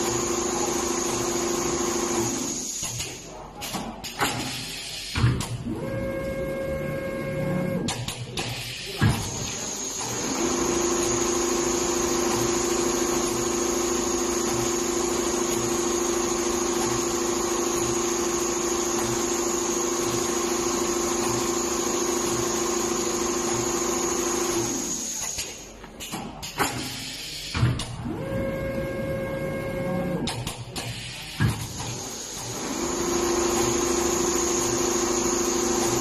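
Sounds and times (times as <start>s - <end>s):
sewing machine humming: 0.0s - 2.8s, 9.8s - 25.2s, 31.9s - 36.0s.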